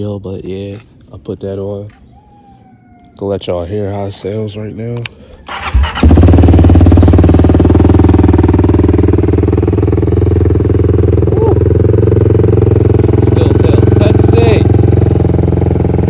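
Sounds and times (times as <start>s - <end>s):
motorcycle engine starting and idling: 5.0s - 16.0s.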